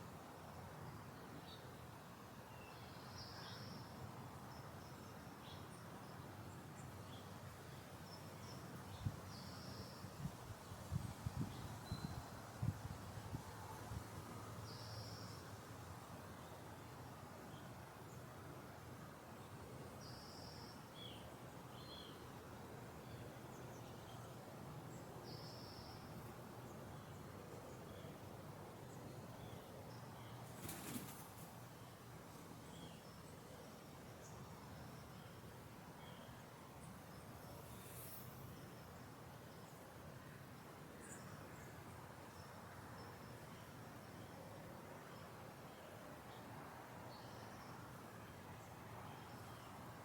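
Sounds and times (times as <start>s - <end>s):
faint bird chirp: 2.4s - 10.3s, 11.4s - 12.5s, 14.3s - 15.5s, 19.4s - 22.3s, 23.0s - 28.2s, 32.6s - 39.8s.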